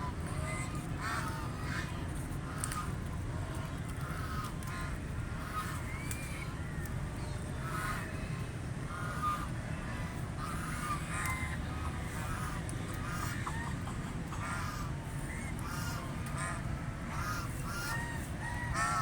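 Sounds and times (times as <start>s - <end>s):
ducks quacking: 8.9s - 19.0s.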